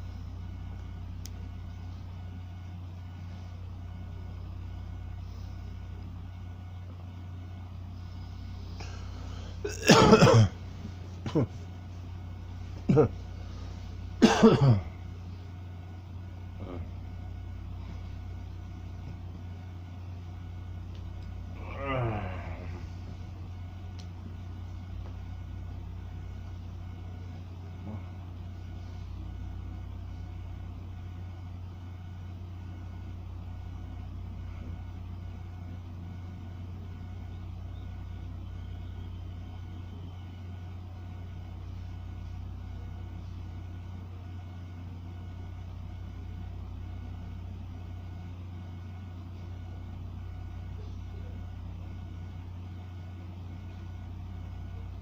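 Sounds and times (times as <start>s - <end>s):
steady low machine hum: 0.0s - 55.0s.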